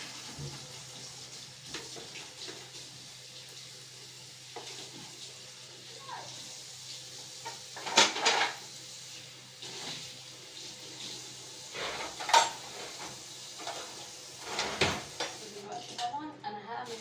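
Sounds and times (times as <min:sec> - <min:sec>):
dishes and cutlery clattering: 0:07.5 - 0:08.6, 0:11.8 - 0:15.4.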